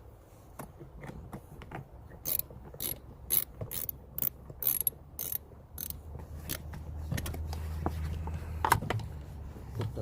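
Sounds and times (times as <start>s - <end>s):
ratchet wrench clicking: 2.2s - 6.6s.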